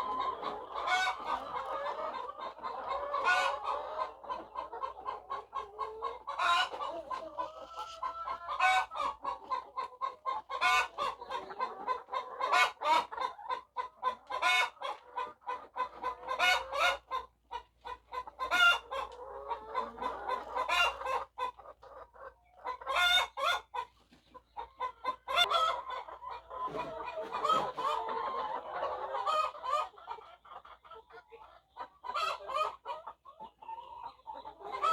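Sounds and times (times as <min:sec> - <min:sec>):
hens squawking: 0:00.0 - 0:22.0
hens clucking: 0:00.0 - 0:34.9.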